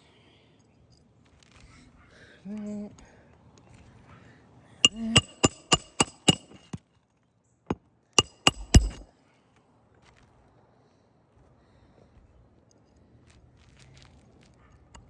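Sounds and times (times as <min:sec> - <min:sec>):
hammer striking nail: 0:04.9 - 0:06.8, 0:08.2 - 0:09.0.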